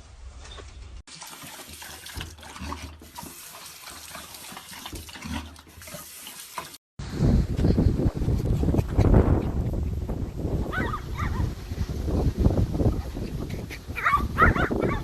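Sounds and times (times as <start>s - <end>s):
running water splashing: 1.1s - 6.8s.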